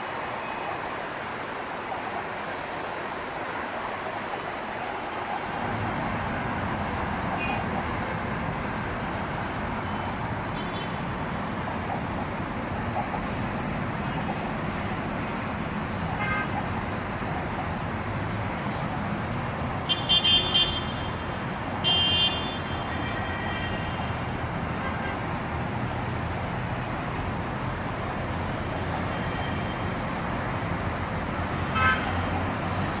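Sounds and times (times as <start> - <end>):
traffic rumble: 0.0 - 33.0
car horn honking: 19.9 - 21.2, 21.8 - 24.1, 31.7 - 32.1.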